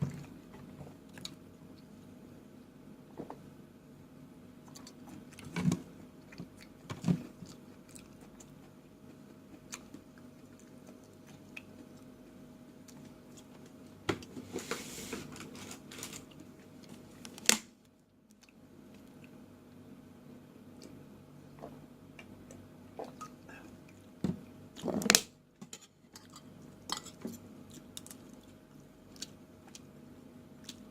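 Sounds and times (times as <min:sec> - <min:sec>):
faint steady hum: 0:00.0 - 0:30.9
person chewing food: 0:04.6 - 0:13.8, 0:26.1 - 0:30.0.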